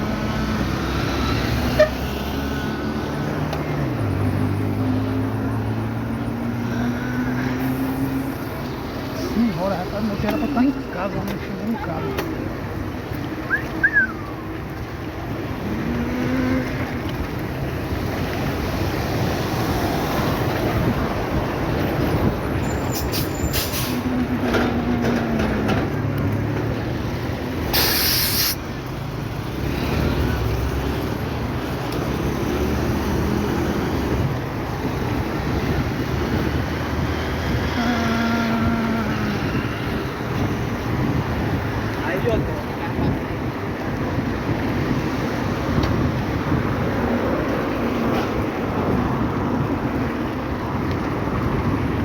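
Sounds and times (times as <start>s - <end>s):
vehicles passing on city street: 0.0s - 52.0s
short loud hiss: 27.7s - 28.6s.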